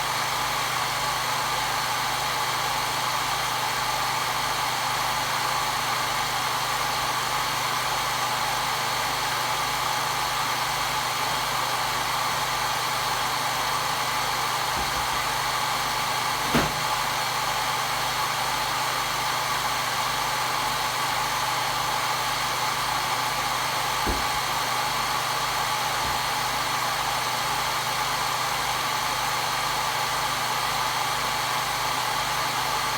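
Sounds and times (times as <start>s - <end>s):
hair dryer running: 11.6s - 18.3s, 22.2s - 28.9s.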